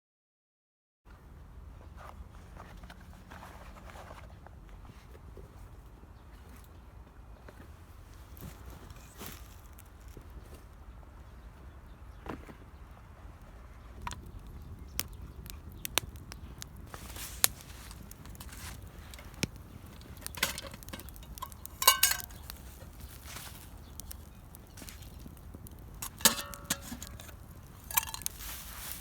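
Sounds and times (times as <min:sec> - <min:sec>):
cookware taps and knocks: 0:21.8 - 0:22.4.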